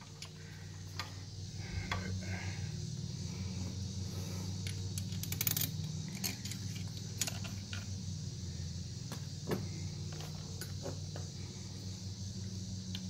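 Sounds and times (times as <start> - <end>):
low hum: 0.0 - 13.0
metal bolts clinking and scraping: 4.6 - 7.9, 10.1 - 11.3.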